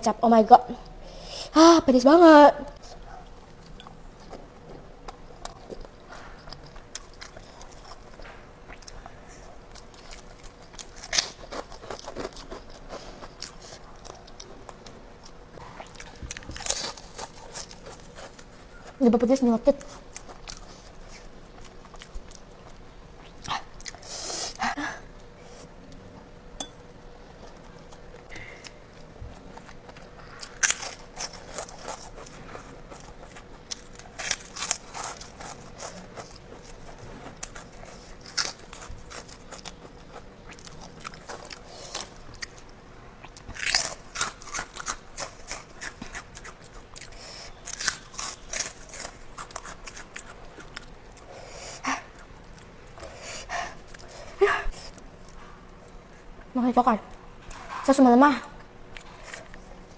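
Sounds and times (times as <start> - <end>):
crunching bites and chewing: 9.7 - 18.6, 29.0 - 51.3.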